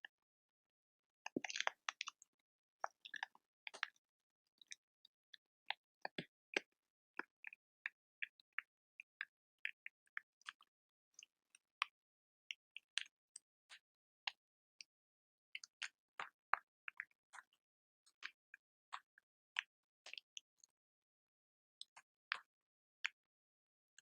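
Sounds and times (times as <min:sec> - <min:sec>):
close-miked clicks and crackles: 0:01.3 - 0:04.0.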